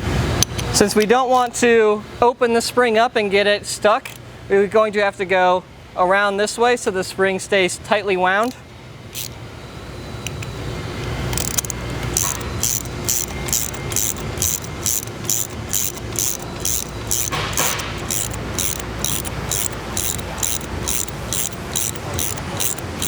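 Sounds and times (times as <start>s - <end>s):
low steady hum: 7.5s - 23.0s
sharp metallic clicks: 8.4s - 9.4s, 10.2s - 23.0s.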